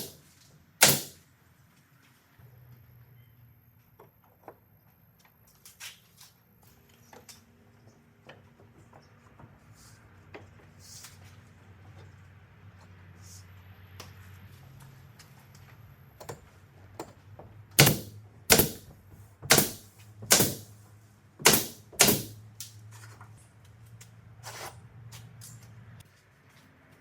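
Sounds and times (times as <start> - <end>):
loud sharp knocks: 0.8 - 1.2, 17.8 - 18.9, 19.5 - 20.7, 21.4 - 22.4.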